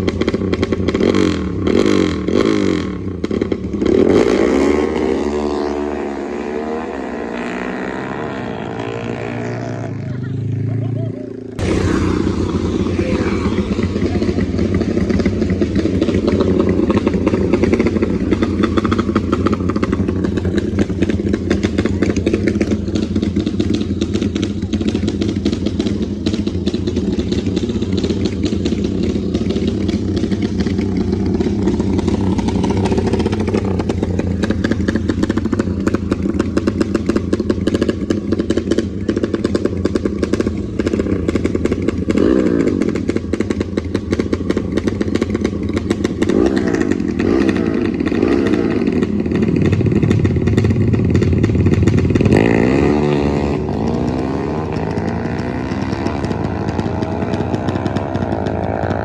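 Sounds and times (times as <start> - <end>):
motorcycle engines revving: 0.0 - 59.0.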